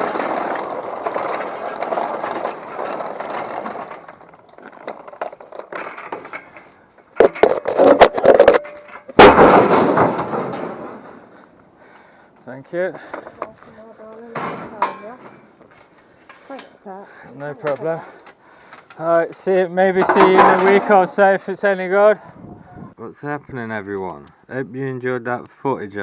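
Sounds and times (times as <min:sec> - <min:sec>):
scrap metal dragged: 0:00.0 - 0:06.7
metal crashing and rattling: 0:00.0 - 0:11.4, 0:20.0 - 0:21.1.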